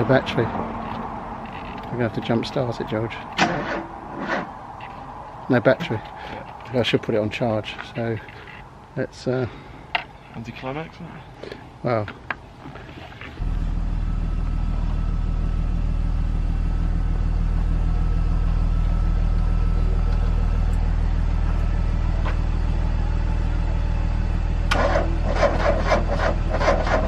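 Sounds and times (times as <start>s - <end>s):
vehicle engine running: 13.4s - 27.0s.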